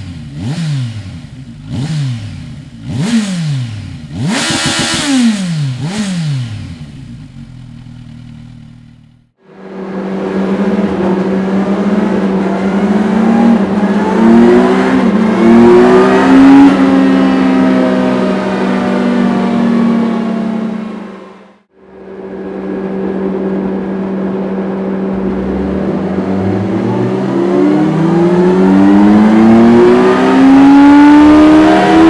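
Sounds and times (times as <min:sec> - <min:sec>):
motorcycle engine revving: 0:00.0 - 0:21.7, 0:22.3 - 0:32.0.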